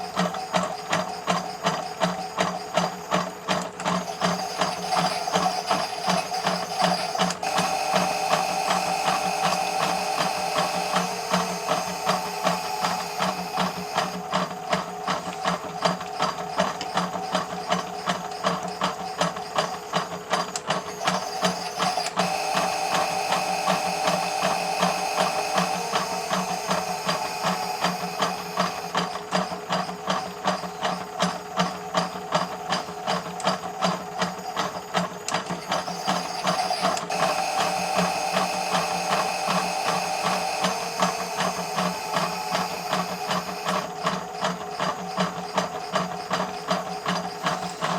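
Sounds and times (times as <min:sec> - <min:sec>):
drum drive clicking and rattling: 0:00.0 - 0:47.9
small electric motor whining: 0:03.6 - 0:18.3, 0:20.6 - 0:29.9, 0:35.3 - 0:47.9.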